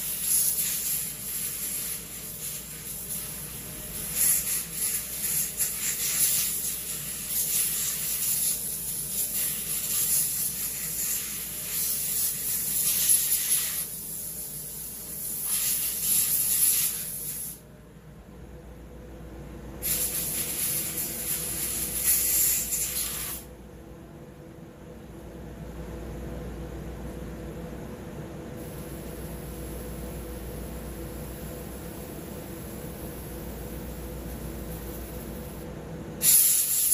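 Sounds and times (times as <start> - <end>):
compressed air blowgun hissing: 19.8 - 23.5, 36.2 - 36.9.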